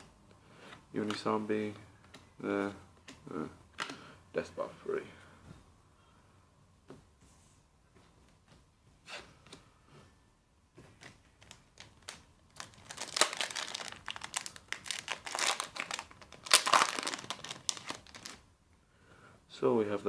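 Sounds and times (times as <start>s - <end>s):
foil wrapper crinkling and tearing: 11.4s - 18.4s.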